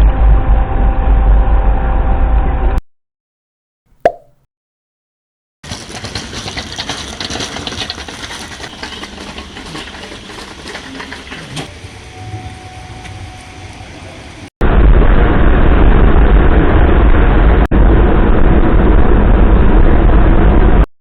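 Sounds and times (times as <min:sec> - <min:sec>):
steady rain falling: 0:05.7 - 0:14.5.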